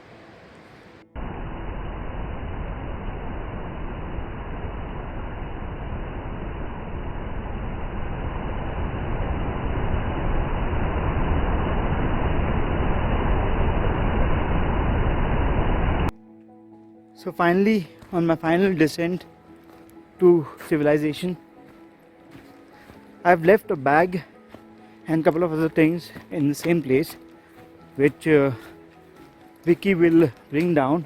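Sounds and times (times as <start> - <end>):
loud low rushing noise: 0.0 - 16.1.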